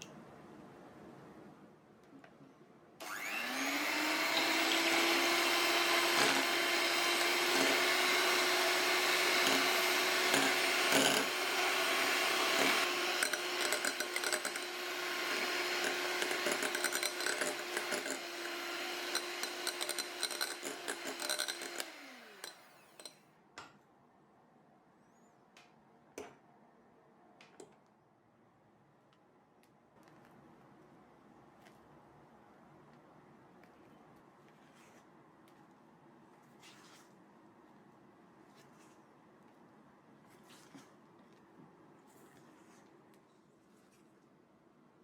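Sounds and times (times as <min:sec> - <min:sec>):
electric mixer whining: 0:03.0 - 0:23.1.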